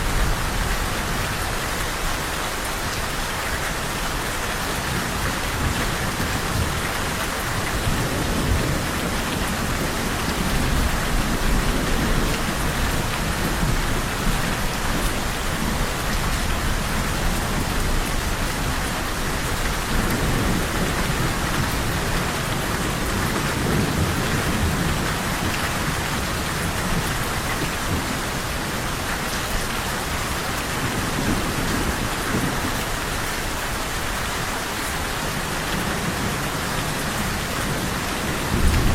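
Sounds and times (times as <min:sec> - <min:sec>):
steady rain falling: 0:00.0 - 0:38.9
thunder rumbling: 0:03.6 - 0:28.8, 0:35.2 - 0:38.9.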